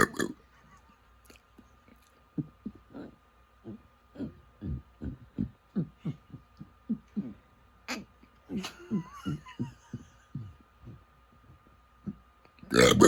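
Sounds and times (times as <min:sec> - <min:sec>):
person burping: 0:00.0 - 0:00.4, 0:12.7 - 0:13.0.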